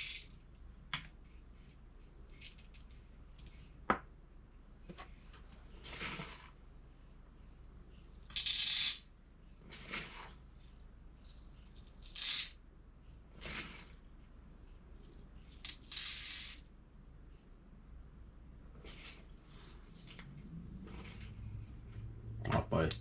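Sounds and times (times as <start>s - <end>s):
lead shot pellets rattling: 8.4s - 9.0s, 12.1s - 12.6s, 15.6s - 16.6s.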